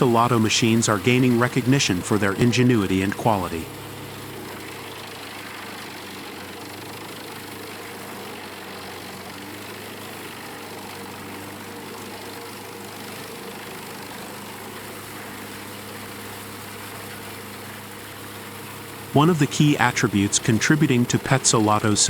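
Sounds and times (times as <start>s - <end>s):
diesel engine humming: 0.0s - 3.9s, 19.2s - 22.0s.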